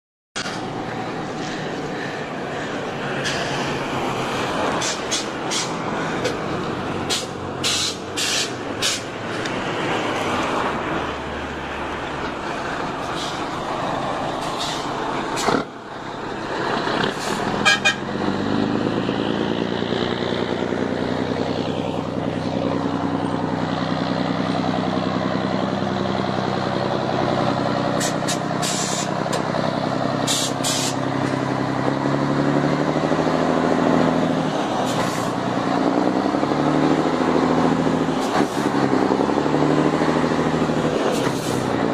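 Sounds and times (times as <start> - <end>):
diesel truck engine running: 0.4 - 41.9.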